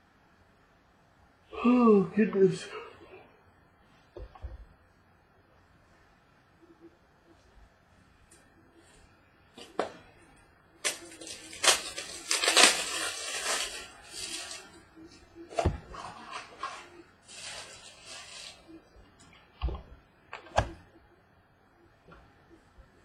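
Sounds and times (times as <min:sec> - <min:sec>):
packaging rustling and crinkling: 0:10.8 - 0:14.9, 0:15.5 - 0:18.8.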